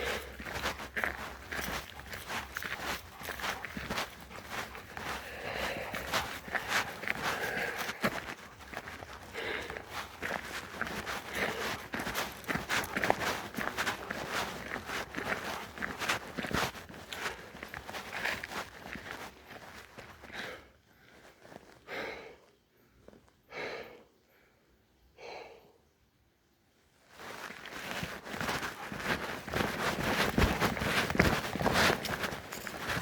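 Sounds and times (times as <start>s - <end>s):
person breathing heavily: 0.0s - 19.3s, 20.1s - 25.8s
footsteps scuffing on trail: 0.0s - 21.8s, 27.2s - 33.0s
rustling: 27.0s - 33.0s.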